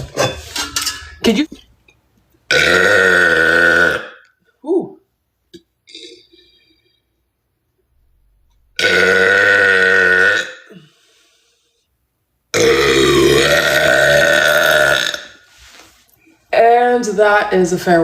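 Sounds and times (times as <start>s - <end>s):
woman burping: 2.5s - 4.2s, 5.9s - 6.7s, 8.8s - 10.9s, 12.5s - 15.4s.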